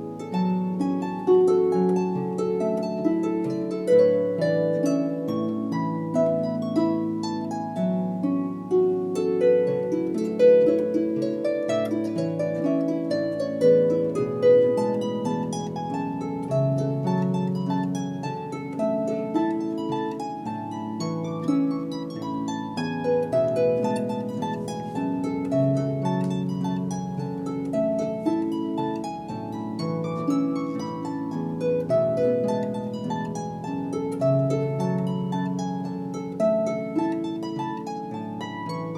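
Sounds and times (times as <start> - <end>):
harp music: 0.0 - 38.9.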